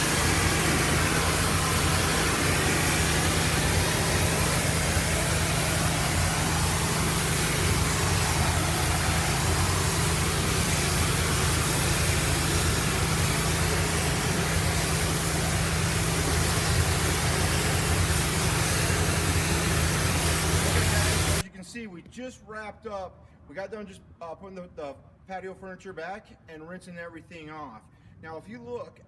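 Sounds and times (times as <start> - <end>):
high-pressure water spraying: 0.0 - 21.4
pressure washer engine humming: 0.0 - 21.4.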